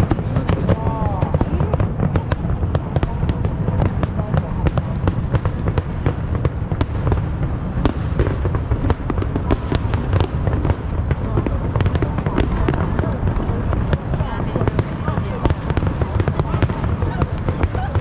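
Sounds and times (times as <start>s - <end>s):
fireworks booming: 0.0s - 18.0s
fireworks cracking and popping: 0.0s - 18.0s.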